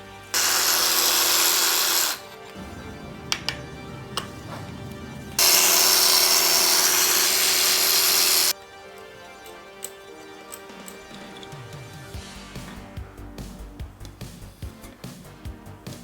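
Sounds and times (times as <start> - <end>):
power tool running: 0.0 - 2.5, 5.4 - 8.6
low background music: 0.0 - 16.0.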